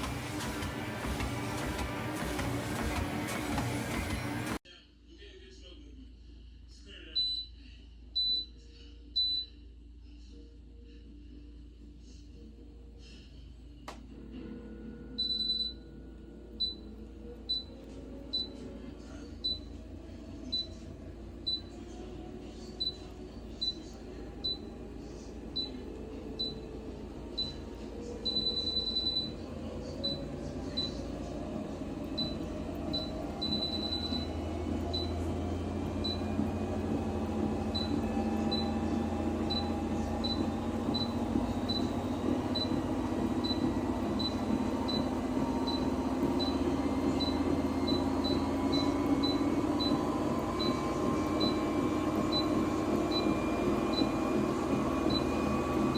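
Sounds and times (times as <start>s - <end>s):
treadmill console beeps: 0.0s - 4.6s, 7.2s - 7.5s, 8.2s - 8.5s, 9.2s - 9.5s, 15.1s - 18.6s, 19.4s - 19.8s, 20.5s - 20.8s, 21.4s - 21.8s, 22.7s - 24.8s, 25.5s - 31.1s, 31.9s - 55.9s
treadmill motor and belt whine: 0.0s - 4.6s, 13.9s - 55.9s.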